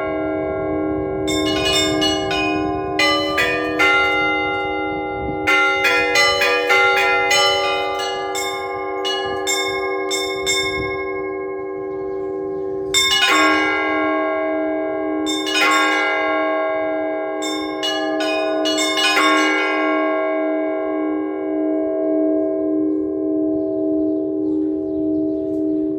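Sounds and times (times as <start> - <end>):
church bells ringing: 0.0 - 25.9.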